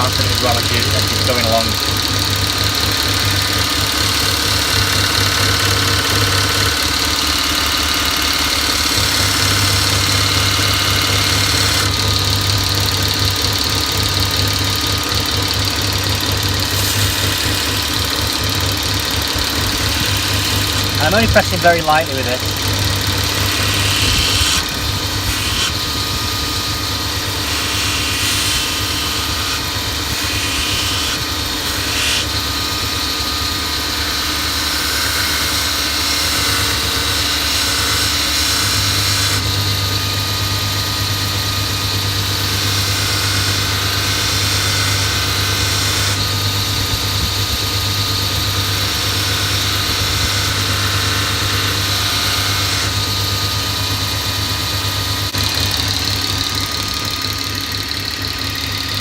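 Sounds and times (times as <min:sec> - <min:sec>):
belt grinder running: 0:00.0 - 0:59.0
belt hissing against blade: 0:27.3 - 0:32.4.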